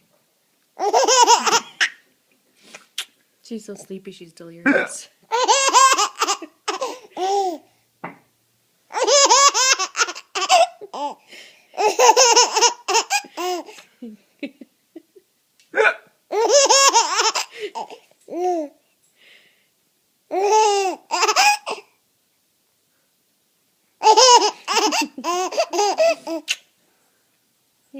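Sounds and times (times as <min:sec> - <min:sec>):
baby laughing uncontrollably: 0:00.8 - 0:02.0, 0:05.3 - 0:07.6, 0:08.9 - 0:11.2, 0:11.8 - 0:13.8, 0:16.3 - 0:18.6, 0:20.3 - 0:21.8, 0:24.0 - 0:26.6
man imitating hiccups: 0:04.6 - 0:05.1, 0:15.7 - 0:16.2.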